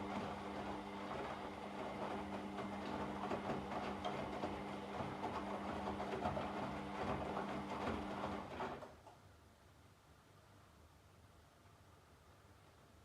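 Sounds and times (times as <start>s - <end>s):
washing machine running: 0.0s - 8.9s.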